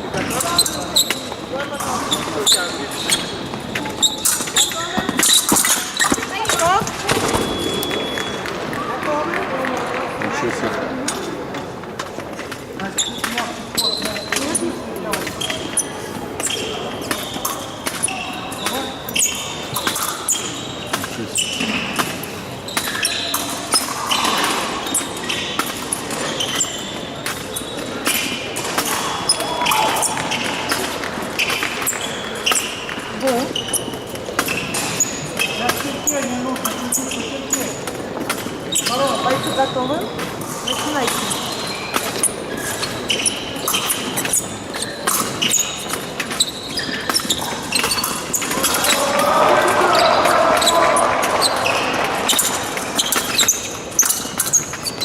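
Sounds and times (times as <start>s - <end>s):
shoes squeaking: 0.0s - 55.0s
fencing footwork stamps: 3.0s - 9.4s.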